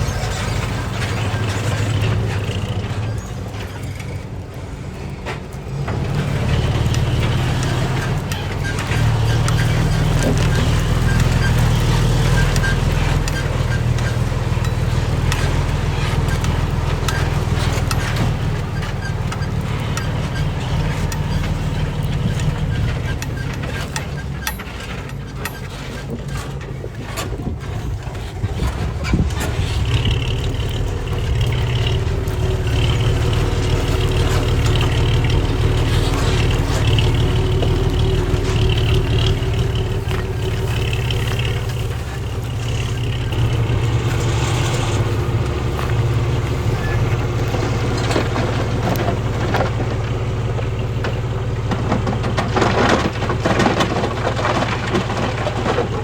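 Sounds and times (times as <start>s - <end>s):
heavy diesel engine under load: 0.0s - 56.0s.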